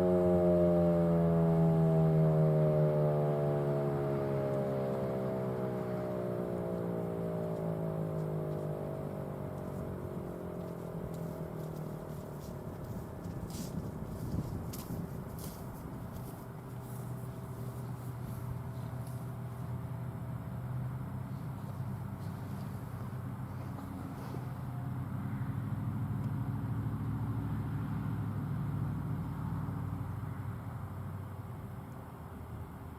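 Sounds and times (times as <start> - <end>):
warning siren winding down: 0.0 - 15.5
vehicle engine humming: 0.0 - 32.9.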